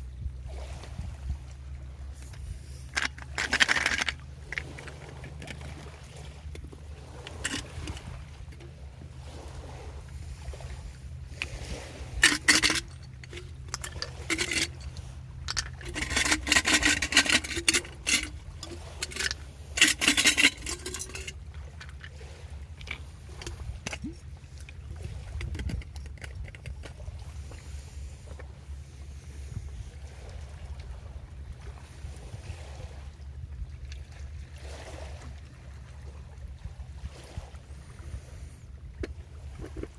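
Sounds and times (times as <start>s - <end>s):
steady low rumble: 0.0s - 34.6s
scraping and rubbing strokes: 2.2s - 6.1s, 7.1s - 8.1s, 10.2s - 22.2s.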